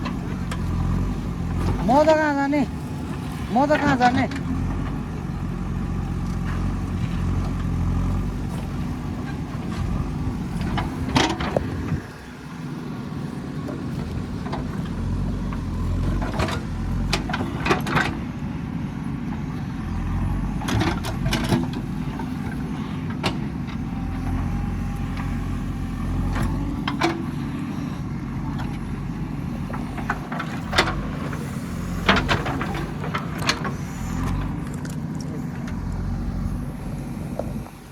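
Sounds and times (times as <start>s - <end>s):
diesel engine running under load: 0.0s - 37.9s
sharp clanks and knocks from digging: 29.8s - 35.8s.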